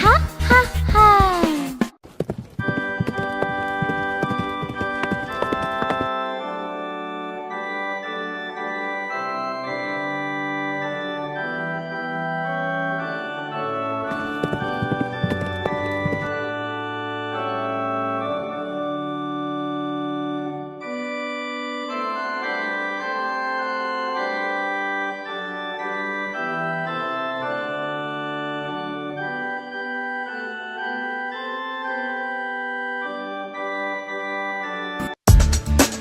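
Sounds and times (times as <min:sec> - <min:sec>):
electronic keyboard music: 0:02.8 - 0:18.9.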